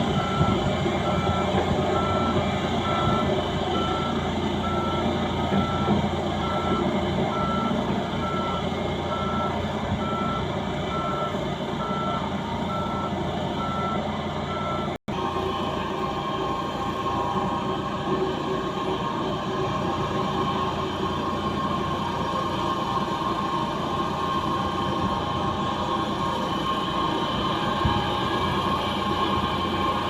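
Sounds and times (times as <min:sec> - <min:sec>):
reversing alarm beeping: 0:00.0 - 0:15.0
skid steer engine running: 0:00.0 - 0:30.0.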